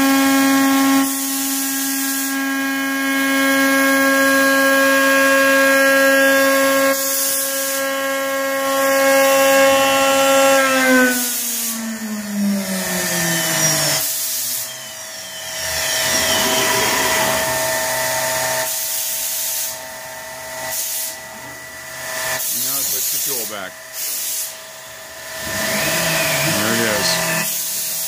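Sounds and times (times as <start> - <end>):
router spindle whining: 0.0 - 19.0, 24.7 - 28.0
air hiss bursts: 1.2 - 2.3, 14.0 - 14.8, 18.6 - 19.8, 20.7 - 21.2, 22.4 - 24.6.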